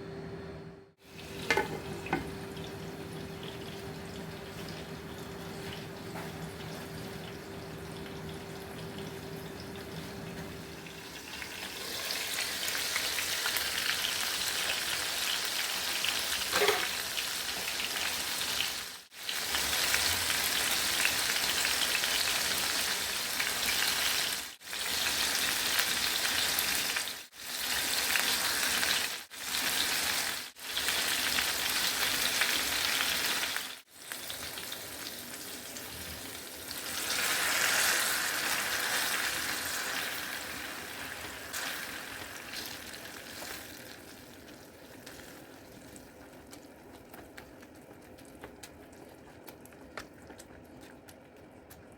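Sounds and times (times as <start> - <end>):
food sizzling in a frying pan: 1.0 - 46.3.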